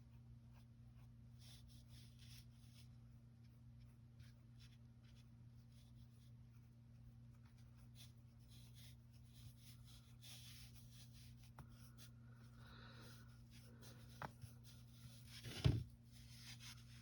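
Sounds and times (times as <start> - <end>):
low electrical hum: 0.0 - 17.0
yarn scratching and rustling: 14.4 - 17.0
thump: 15.4 - 15.9.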